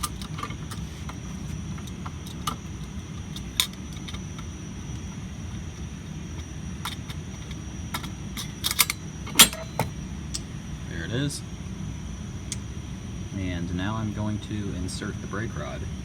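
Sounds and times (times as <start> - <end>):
fire alarm pull station clicks: 0.0 - 1.2, 1.8 - 5.1, 5.8 - 10.4
steady low hum: 0.0 - 16.0.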